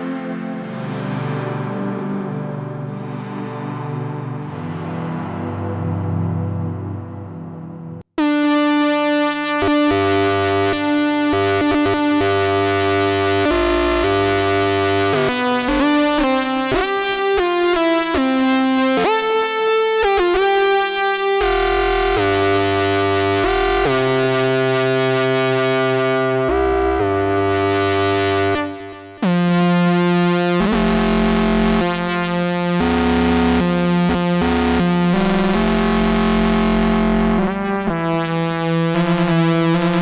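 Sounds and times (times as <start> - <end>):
bright buzzy synth notes and chords: 8.2 - 40.0
low dark synth tone: 12.4 - 15.8.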